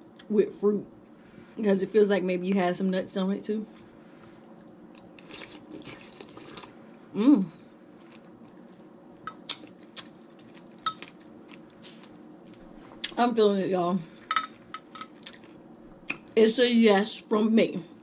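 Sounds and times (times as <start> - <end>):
chewing berries: 3.7 - 6.8, 8.0 - 13.2, 14.5 - 16.4
person humming mmm: 7.1 - 7.7.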